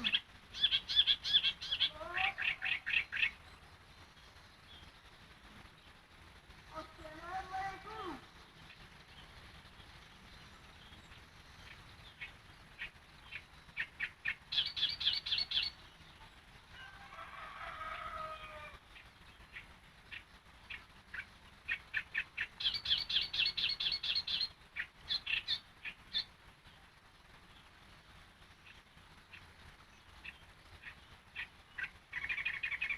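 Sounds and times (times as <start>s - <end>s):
bird warbling: 0.0s - 3.4s, 30.2s - 32.9s.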